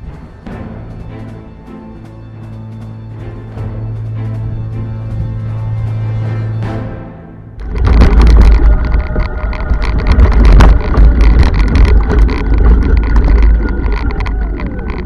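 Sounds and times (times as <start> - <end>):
tractor engine rumbling: 7.6 - 15.0.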